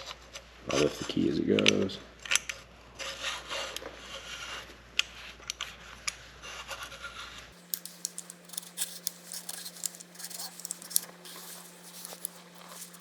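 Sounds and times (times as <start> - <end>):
light metal scraping: 7.6 - 13.0
small metal clicks: 7.6 - 13.0.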